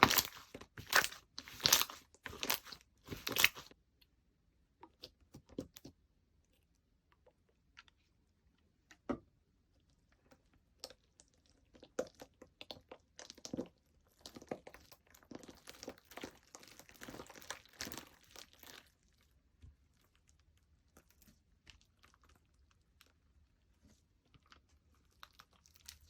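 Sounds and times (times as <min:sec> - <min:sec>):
slime squishing and crackling: 0:00.0 - 0:03.8, 0:09.8 - 0:26.0.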